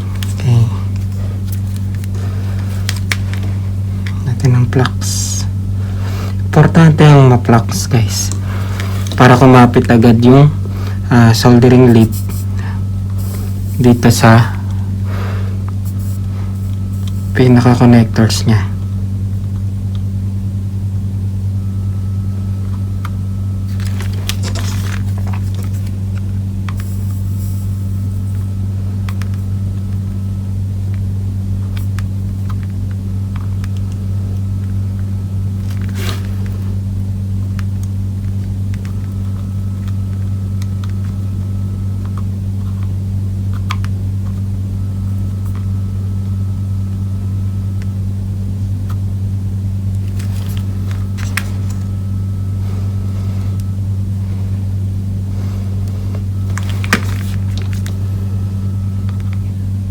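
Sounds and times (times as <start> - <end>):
low electrical hum: 0.0 - 59.9.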